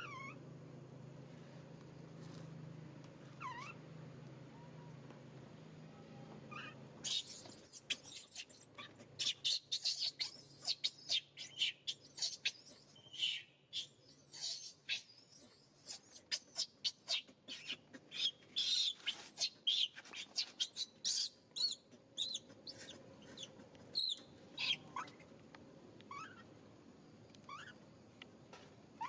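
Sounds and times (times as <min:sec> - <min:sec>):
baby monkey squealing: 0:00.0 - 0:00.4, 0:03.4 - 0:03.8, 0:06.5 - 0:25.2, 0:26.1 - 0:26.5, 0:27.4 - 0:27.8.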